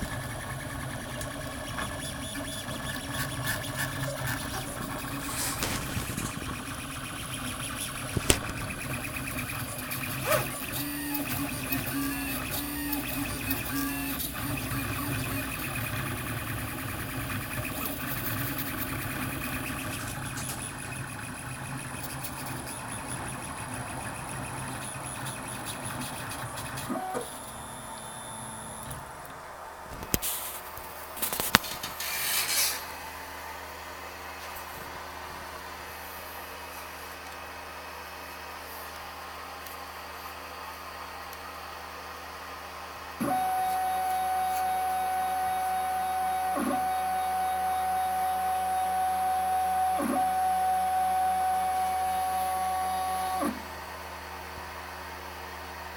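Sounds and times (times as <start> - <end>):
stepper motors whirring: 0.0 - 30.6, 43.2 - 53.6
printer hum: 0.0 - 31.6, 42.9 - 53.8
sharp clicks: 8.1 - 8.7.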